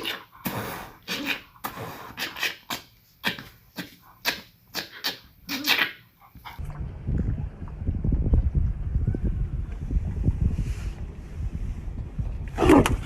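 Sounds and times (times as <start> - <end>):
dog making sharp noisy sounds: 0.0 - 6.6.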